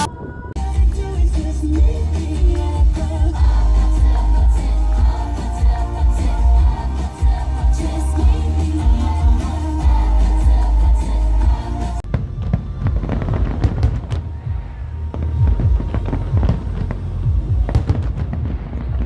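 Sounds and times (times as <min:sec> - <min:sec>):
pop song: 0:00.0 - 0:12.2
fireworks booming and crackling: 0:12.0 - 0:19.0.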